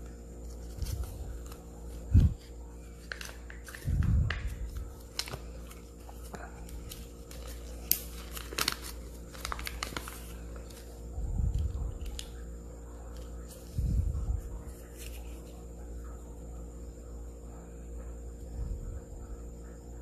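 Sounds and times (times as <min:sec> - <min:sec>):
packaging crinkling and tearing: 0:02.9 - 0:12.4.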